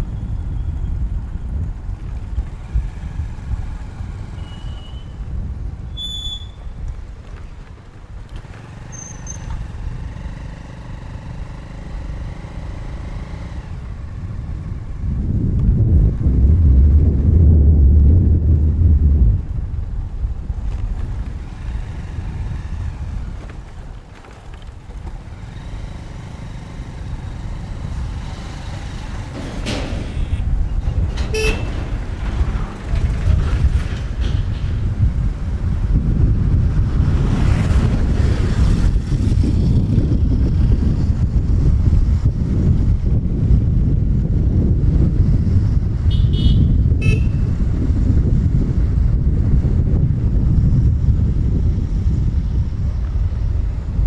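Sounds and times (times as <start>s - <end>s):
road traffic rumble: 0.0s - 54.0s
vehicle pitched hum: 0.0s - 54.0s
wind noise on microphone: 0.0s - 54.0s
vehicle horn honking: 4.4s - 5.2s, 31.2s - 31.8s, 46.1s - 47.6s.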